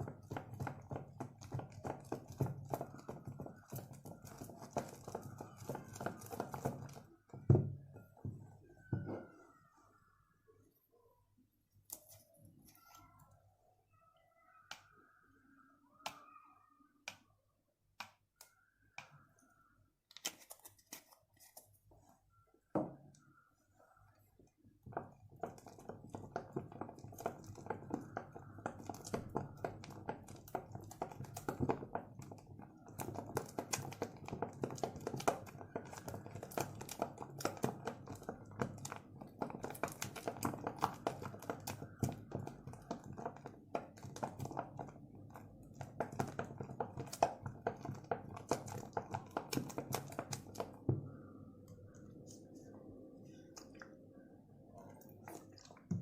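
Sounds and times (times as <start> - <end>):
sticky slime crackling: 0.0 - 7.5, 24.9 - 50.9.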